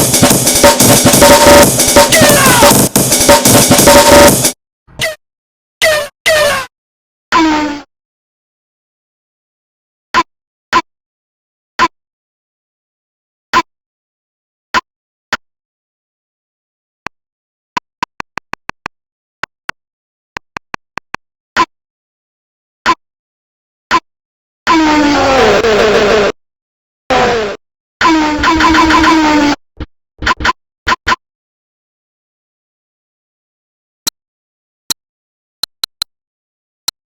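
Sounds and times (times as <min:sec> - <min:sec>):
chopped voice stabs melody: 0:00.8 - 0:02.9
harsh shouted voice: 0:02.0 - 0:02.9.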